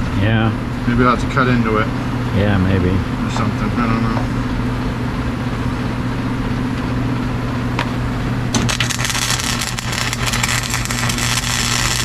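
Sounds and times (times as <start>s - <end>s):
steady low hum: 0.0s - 12.0s
welding arc crackling: 7.8s - 12.0s.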